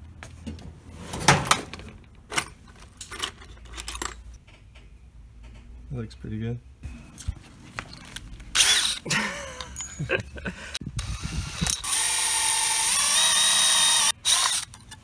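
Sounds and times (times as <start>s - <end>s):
drill chuck clicking and rattling: 8.5s - 9.8s, 11.0s - 15.0s
power drill drilling into steel: 8.6s - 9.0s, 11.0s - 14.8s.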